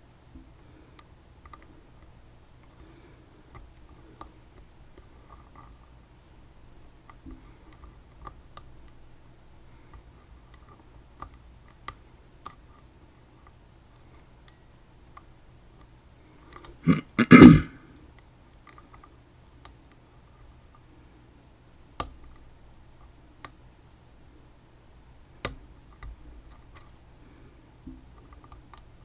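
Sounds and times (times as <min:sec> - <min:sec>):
person clearing throat: 0:16.9 - 0:17.8.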